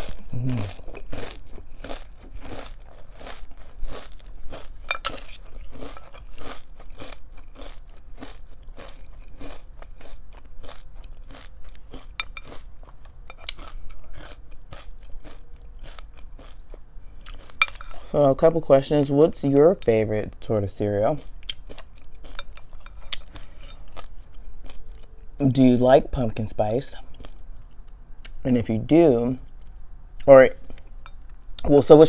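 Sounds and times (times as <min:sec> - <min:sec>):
chewing crunchy cereal: 0:00.0 - 0:18.4, 0:19.8 - 0:25.4, 0:26.9 - 0:28.4.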